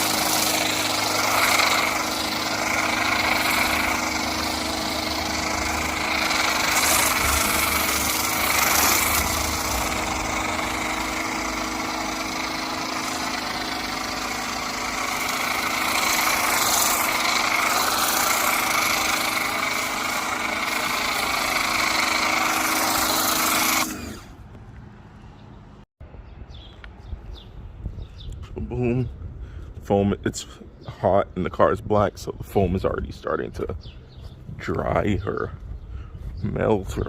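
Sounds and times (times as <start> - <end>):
hiss of foam spray: 0.0 - 23.8
pressure washer motor hum: 0.0 - 24.9.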